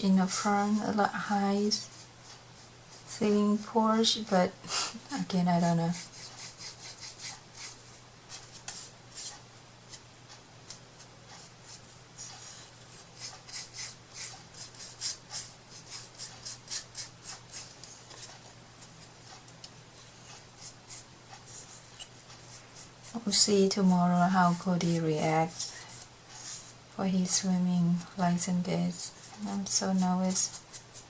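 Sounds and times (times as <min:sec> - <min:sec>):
faint steady hum: 0:00.0 - 0:31.0
hand tool rubbing on a surface: 0:05.6 - 0:09.4.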